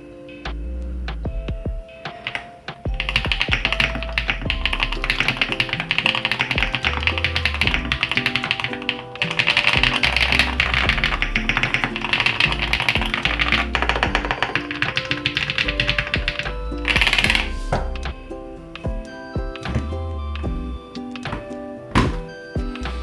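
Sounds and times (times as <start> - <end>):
background music: 0.0 - 23.0
mechanical keyboard typing: 2.2 - 17.5.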